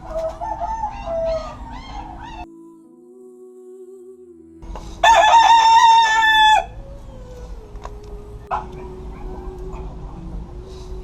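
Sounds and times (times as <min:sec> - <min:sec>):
rooster crowing: 0:00.0 - 0:02.4, 0:05.0 - 0:07.4
faint steady hum: 0:00.0 - 0:11.0.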